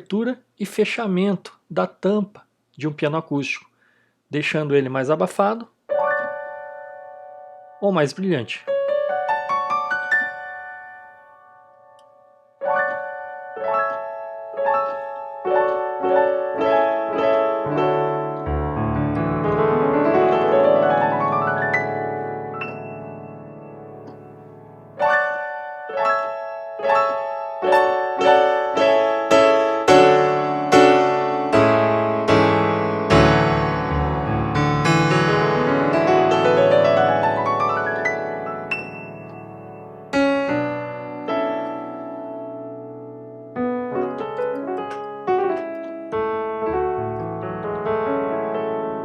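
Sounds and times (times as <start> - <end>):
piano chords: 5.9 - 49.0
rising run of piano notes: 12.6 - 49.0.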